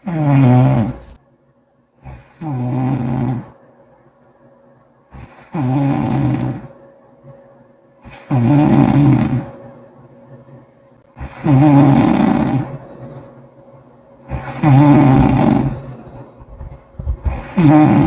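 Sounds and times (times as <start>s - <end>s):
person snoring: 0.0s - 1.2s, 2.0s - 3.6s, 5.1s - 6.8s, 8.0s - 9.6s, 11.2s - 13.4s, 14.2s - 16.5s, 17.2s - 18.0s.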